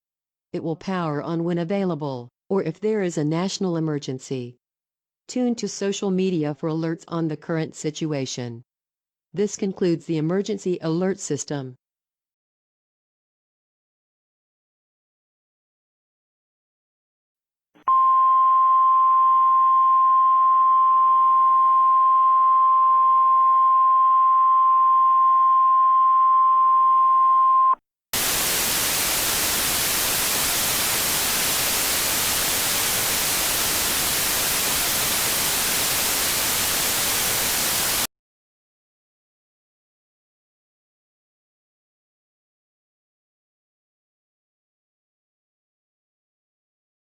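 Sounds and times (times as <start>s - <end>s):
static hiss: 28.2s - 38.1s.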